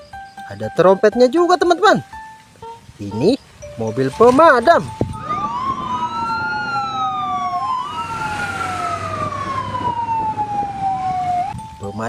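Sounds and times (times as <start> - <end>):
fire engine siren wailing: 4.2 - 11.6.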